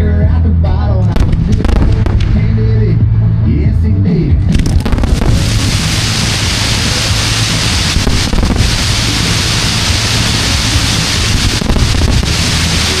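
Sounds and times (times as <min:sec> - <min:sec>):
fireworks crackling and rumbling: 0:01.1 - 0:03.0, 0:04.5 - 0:13.0.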